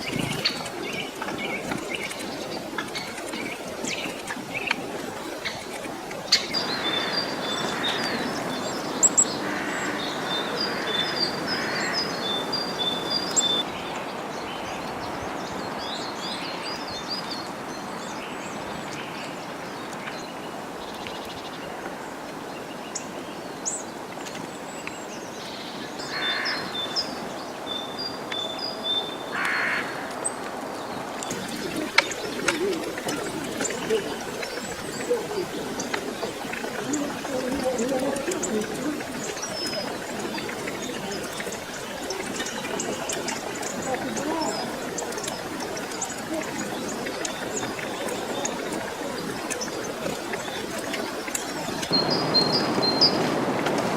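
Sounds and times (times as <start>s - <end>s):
harsh low bird calls: 0.0s - 13.8s, 25.9s - 53.6s
tits calling: 0.0s - 14.9s, 31.2s - 53.5s.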